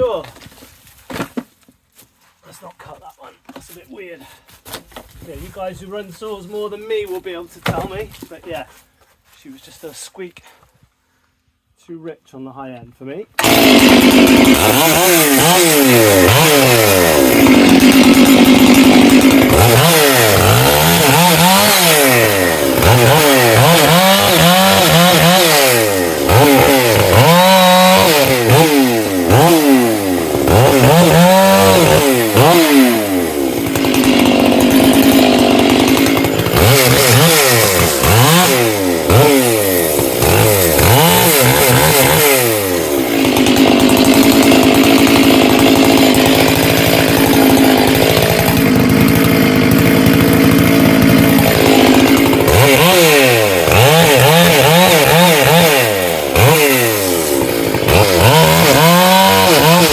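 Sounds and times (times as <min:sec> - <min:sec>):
chainsaw revving: 0:13.4 - 0:59.9.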